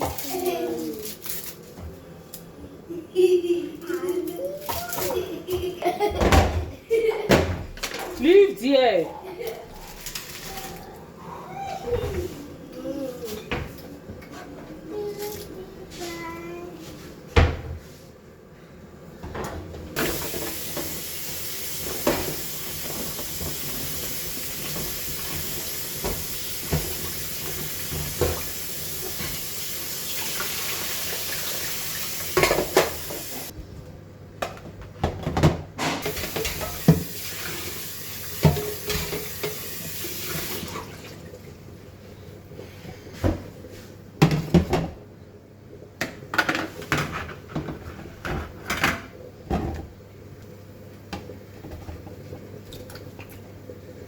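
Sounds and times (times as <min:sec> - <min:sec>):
tap running into sink: 0:35.3 - 0:37.7.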